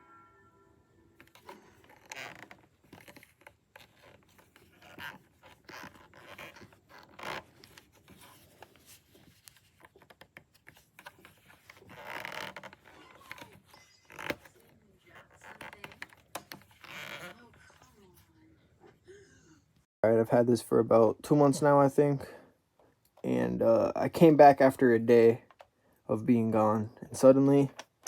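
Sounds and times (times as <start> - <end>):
scratching and rustling strokes: 1.2 - 18.4.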